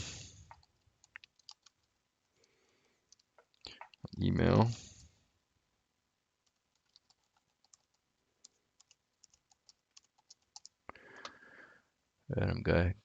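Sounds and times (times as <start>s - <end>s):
faint keyboard typing: 0.1s - 4.7s, 6.3s - 11.4s.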